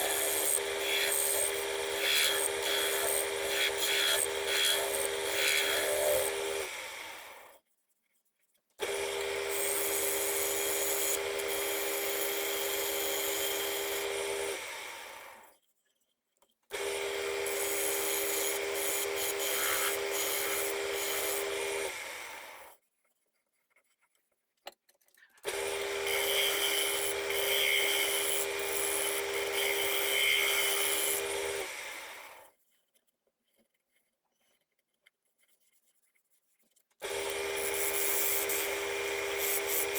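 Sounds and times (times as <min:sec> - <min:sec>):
tool scraping spinning wood: 0:00.0 - 0:06.8, 0:16.8 - 0:22.0, 0:25.5 - 0:31.8, 0:37.0 - 0:39.9
wood lathe humming: 0:00.0 - 0:07.5, 0:08.8 - 0:15.4, 0:16.7 - 0:22.7, 0:25.5 - 0:32.4, 0:37.0 - 0:39.9.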